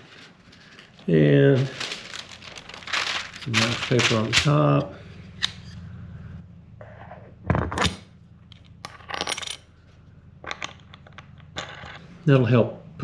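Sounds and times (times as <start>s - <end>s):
hard objects clicking and knocking: 1.8s - 4.6s.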